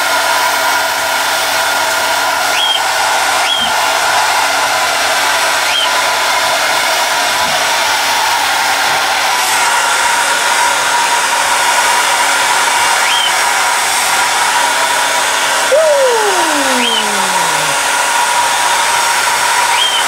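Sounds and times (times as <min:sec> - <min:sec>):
hair dryer blowing: 0:00.0 - 0:20.0
long downward sliding call: 0:15.5 - 0:18.4.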